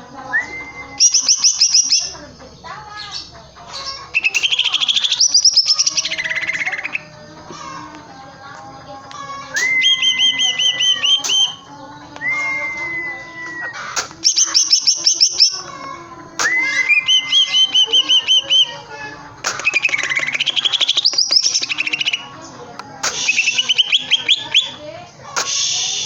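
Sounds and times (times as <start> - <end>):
bird singing whistles and chatter: 0.0 - 26.0
sharp knocks: 13.9 - 14.2, 19.4 - 20.1.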